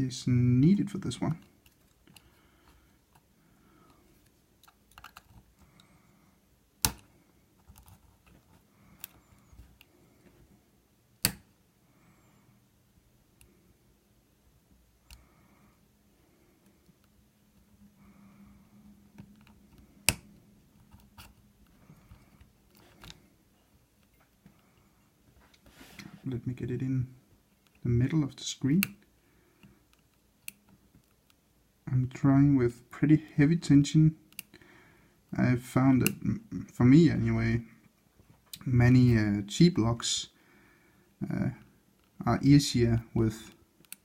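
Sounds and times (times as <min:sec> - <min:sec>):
lock picks clicking and scraping: 0:04.6 - 0:05.6.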